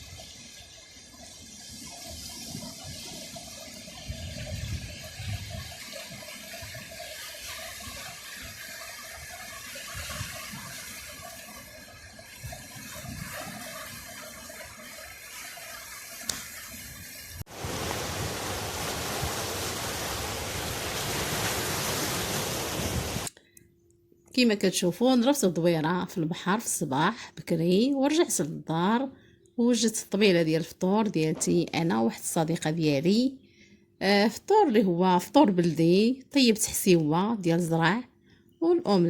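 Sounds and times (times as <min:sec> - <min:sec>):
wind rumbling on microphone: 0:00.0 - 0:15.0, 0:16.5 - 0:23.3
surf washing on shore: 0:00.0 - 0:23.3.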